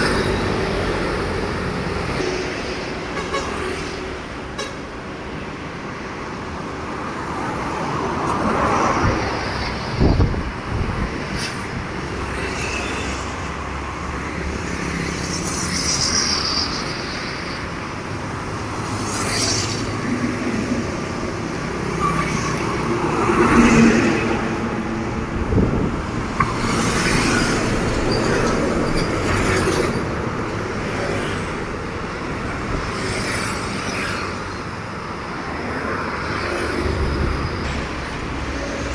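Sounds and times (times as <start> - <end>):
road traffic passing: 0.0 - 38.9.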